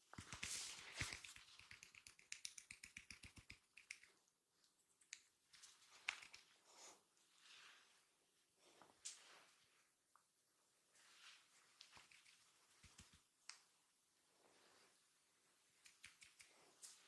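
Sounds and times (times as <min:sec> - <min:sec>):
hands slapping in massage: 0:00.1 - 0:04.1, 0:11.9 - 0:13.6.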